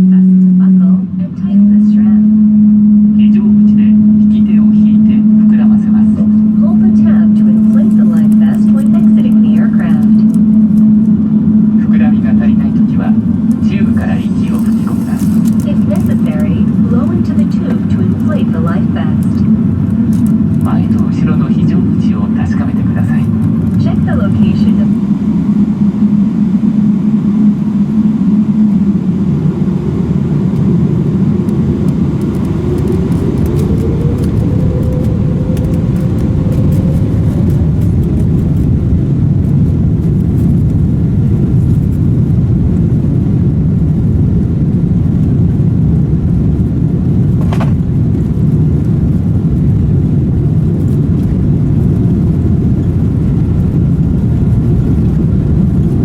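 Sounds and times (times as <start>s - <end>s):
jet engines rumbling in cabin: 0.0s - 56.0s.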